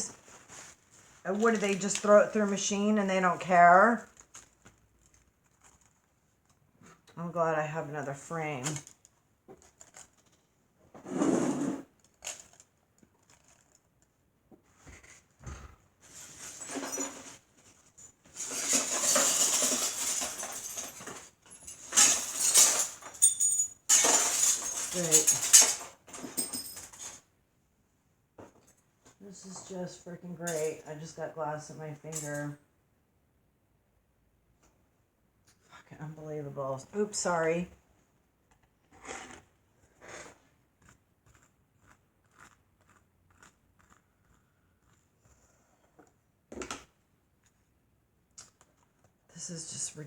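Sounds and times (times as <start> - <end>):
packaging rustling and crinkling: 4.1 - 6.6
broken glass scraping: 18.3 - 27.2.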